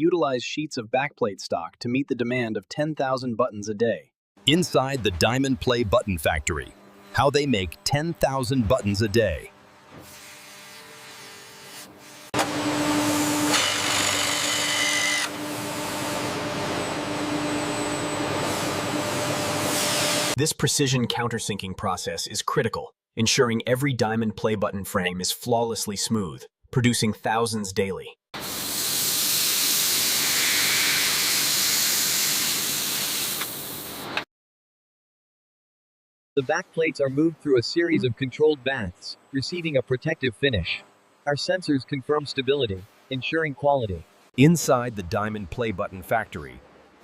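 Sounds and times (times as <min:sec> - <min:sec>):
power drill running: 0:12.4 - 0:16.2
bright cutting noise: 0:13.3 - 0:15.4.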